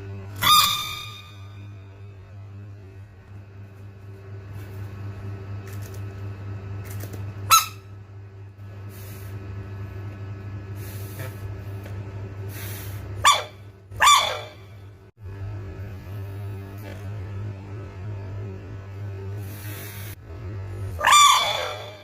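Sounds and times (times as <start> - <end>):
electrical hum: 0.0 - 22.0
frog squeaky calls: 0.4 - 1.7, 7.5 - 7.8, 13.2 - 14.7, 21.0 - 22.0.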